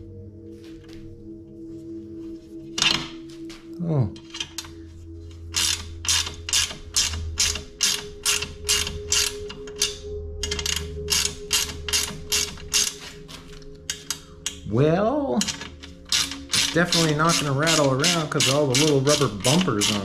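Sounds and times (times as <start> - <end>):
ratchet wrench clicking: 5.6 - 13.1, 13.9 - 14.6, 15.4 - 20.0.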